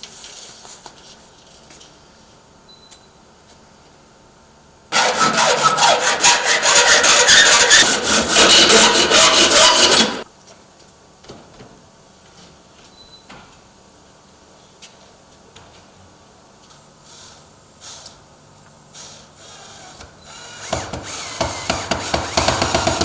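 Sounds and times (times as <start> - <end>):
saw cutting in strokes: 4.9 - 10.2.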